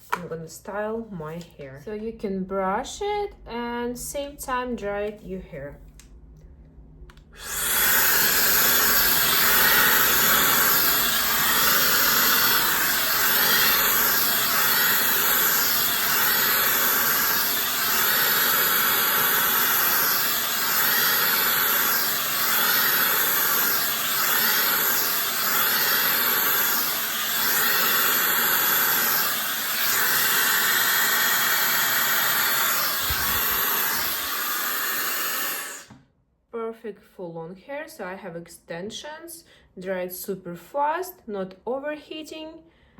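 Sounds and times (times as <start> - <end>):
hair dryer blowing: 7.4 - 36.0.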